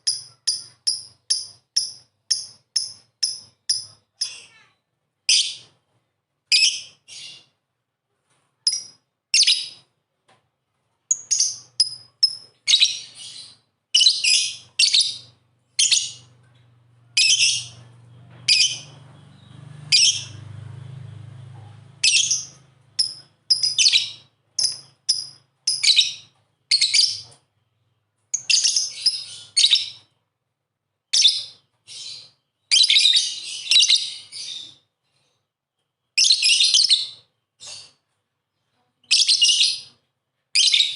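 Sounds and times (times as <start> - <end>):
lovebirds chirping: 0.0 - 4.7, 8.6 - 9.9, 11.1 - 30.2
faint low hum: 9.8 - 31.0.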